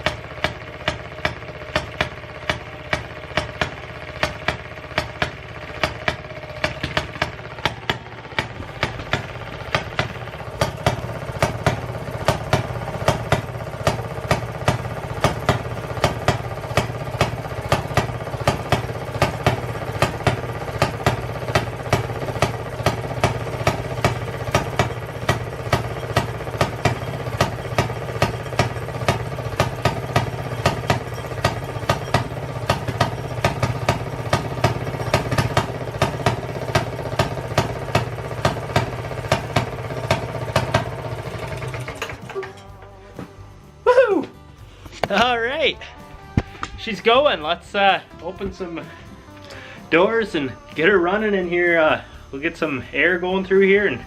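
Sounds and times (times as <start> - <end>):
two-stroke engine exhaust popping: 0.0 - 42.6.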